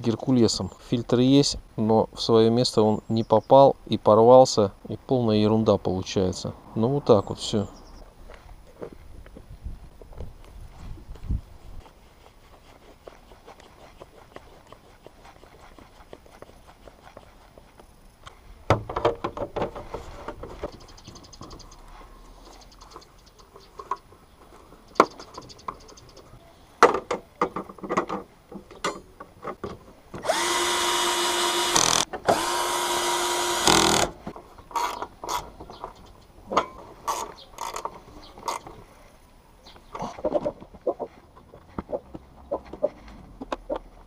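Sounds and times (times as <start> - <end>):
parts clicking and knocking: 18.2 - 21.9, 22.7 - 38.8
electric drill whining: 30.2 - 34.2.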